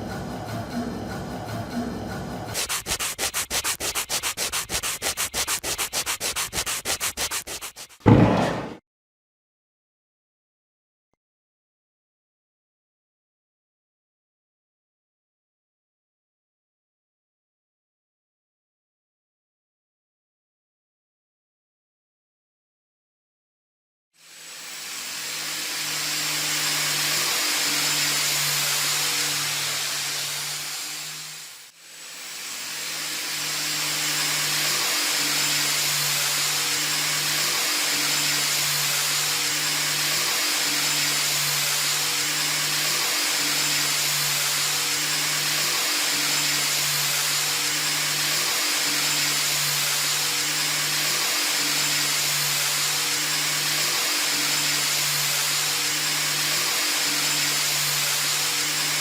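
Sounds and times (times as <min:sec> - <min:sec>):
pulsing low hum: 0:00.0 - 0:02.6
machine hissing: 0:00.4 - 0:05.1.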